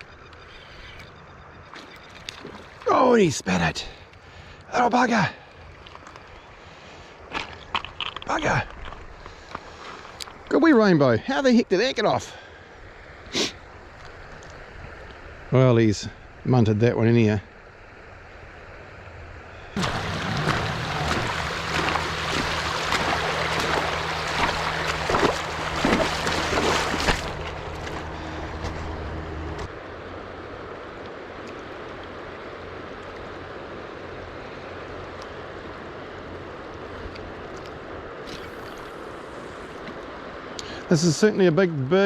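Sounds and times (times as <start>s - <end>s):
river water rushing: 19.8s - 40.9s.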